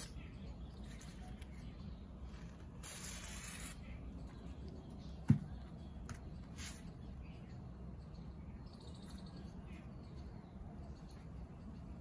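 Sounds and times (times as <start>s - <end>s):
aerosol spray hissing: 2.8s - 3.8s.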